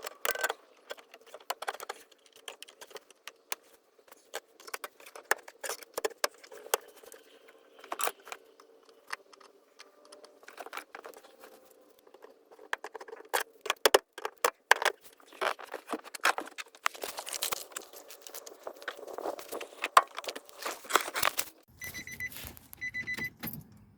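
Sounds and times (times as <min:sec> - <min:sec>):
tools and metal parts clicking: 0:00.0 - 0:07.2, 0:07.8 - 0:15.6, 0:22.2 - 0:23.9.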